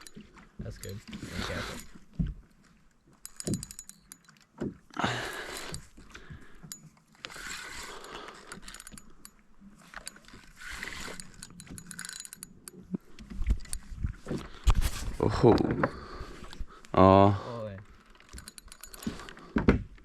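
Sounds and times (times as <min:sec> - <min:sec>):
fishing reel gears clicking: 0:00.8 - 0:02.1, 0:03.1 - 0:13.9, 0:17.8 - 0:19.4.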